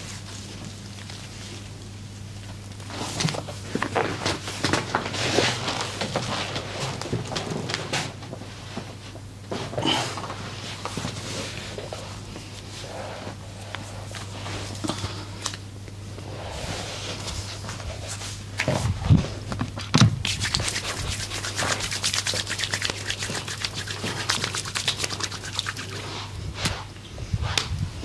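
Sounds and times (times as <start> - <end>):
electrical hum: 0.0 - 28.0
hands rubbing skin: 20.2 - 26.9.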